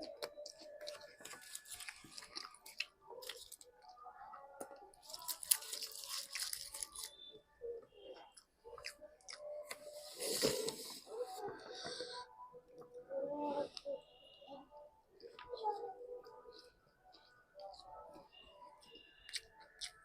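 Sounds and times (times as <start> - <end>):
person chewing and crunching: 0.0 - 7.3, 8.2 - 11.1, 16.2 - 20.0.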